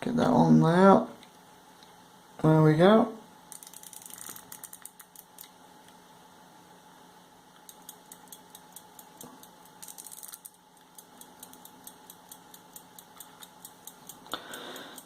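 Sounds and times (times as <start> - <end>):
pocket watch ticking: 3.6 - 5.4, 7.6 - 15.0.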